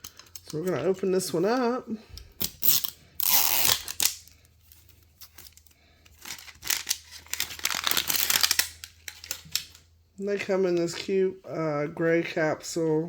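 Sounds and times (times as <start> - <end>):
packaging tearing and crinkling: 2.4 - 9.8.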